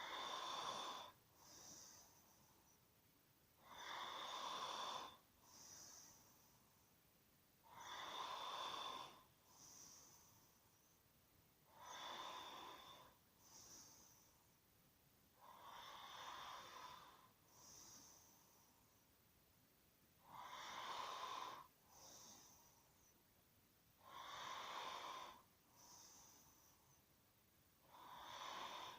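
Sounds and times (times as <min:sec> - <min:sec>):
person snoring: 0:00.0 - 0:02.2, 0:03.6 - 0:06.2, 0:07.7 - 0:10.3, 0:11.7 - 0:14.2, 0:15.4 - 0:18.3, 0:20.2 - 0:23.1, 0:24.0 - 0:26.7, 0:27.8 - 0:28.9
soft hissing breath: 0:00.0 - 0:19.3, 0:20.1 - 0:28.9.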